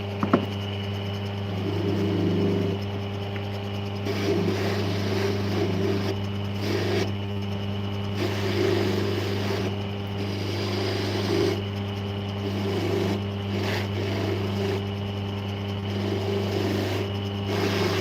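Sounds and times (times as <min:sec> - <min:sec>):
small electric motor humming: 0:00.0 - 0:18.0.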